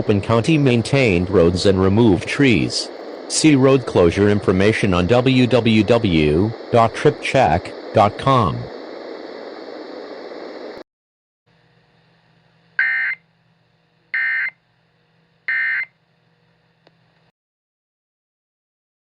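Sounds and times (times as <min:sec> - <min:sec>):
buzzy digital data tones: 0:00.0 - 0:10.8, 0:12.8 - 0:13.2, 0:14.1 - 0:14.6, 0:15.5 - 0:15.9
steady hiss: 0:00.0 - 0:10.8.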